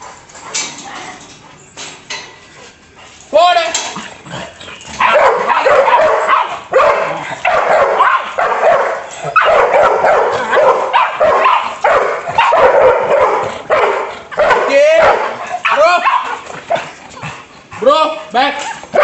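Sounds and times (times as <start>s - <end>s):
puppy yipping: 4.9s - 14.6s
dog barking: 5.0s - 16.9s.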